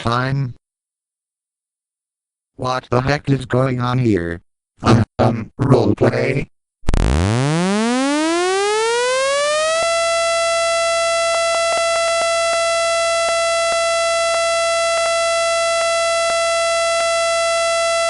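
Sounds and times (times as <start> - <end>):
tornado warning siren wailing: 6.9 - 18.0.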